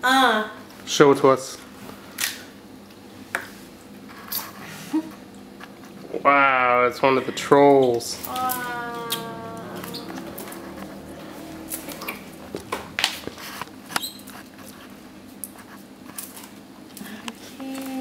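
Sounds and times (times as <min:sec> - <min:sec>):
plastic and foil crinkling: 0:13.0 - 0:18.0.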